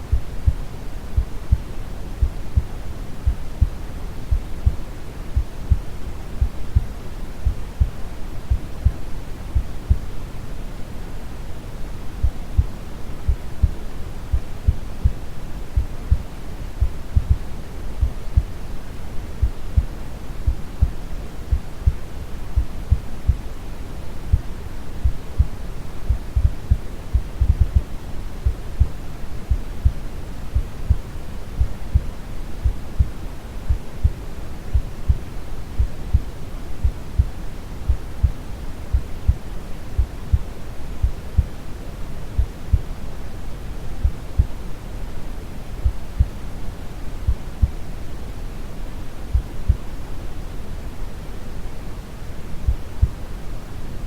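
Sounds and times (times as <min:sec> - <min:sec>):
brown noise hiss: 0:00.0 - 0:54.0
slow heartbeat thumps: 0:00.1 - 0:04.8, 0:05.4 - 0:09.0, 0:09.6 - 0:10.1, 0:12.2 - 0:12.7, 0:15.8 - 0:18.6, 0:24.3 - 0:28.9, 0:33.7 - 0:39.4, 0:40.0 - 0:41.6, 0:44.0 - 0:44.6, 0:47.3 - 0:47.8, 0:52.7 - 0:53.2.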